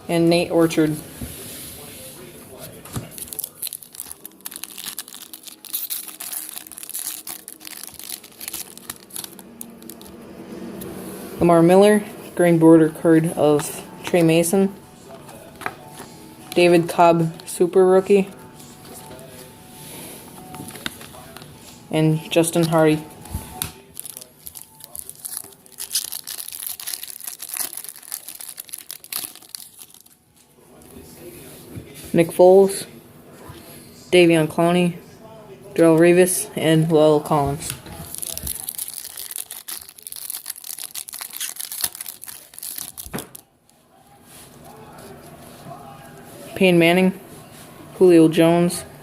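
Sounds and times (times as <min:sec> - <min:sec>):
foil wrapper tearing and crinkling: 0:03.0 - 0:10.2, 0:23.8 - 0:30.2, 0:38.0 - 0:43.5.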